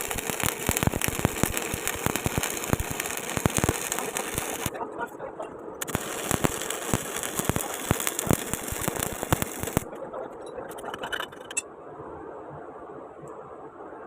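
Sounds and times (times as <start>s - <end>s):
welding arc crackling: 0.0s - 5.0s, 5.8s - 11.5s.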